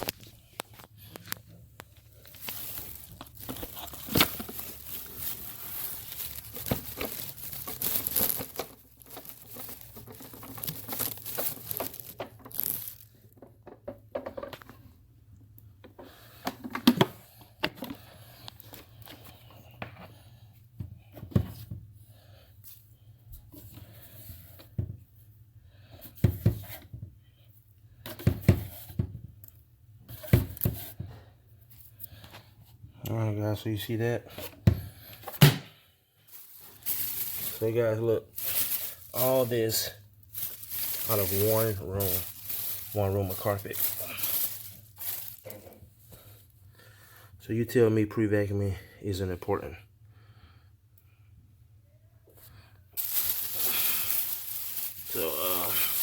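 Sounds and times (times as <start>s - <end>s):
crinkling and rustling: 0.0s - 15.0s, 36.2s - 46.4s, 52.3s - 56.0s.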